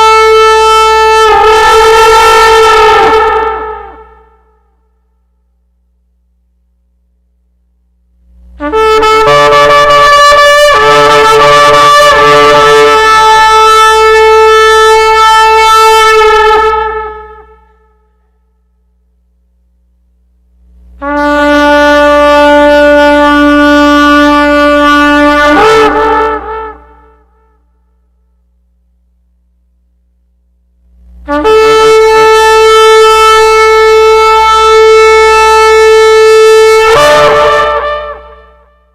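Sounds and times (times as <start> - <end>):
shofar blasts: 0.0 - 5.0, 8.6 - 18.4, 21.0 - 28.0, 31.3 - 38.9.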